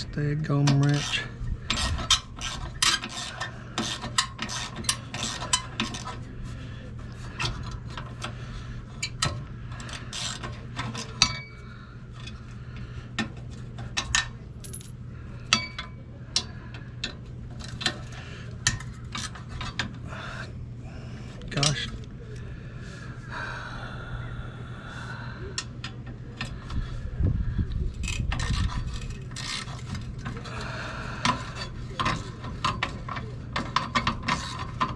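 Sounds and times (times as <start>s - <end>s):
steady low hum: 0.0s - 33.4s.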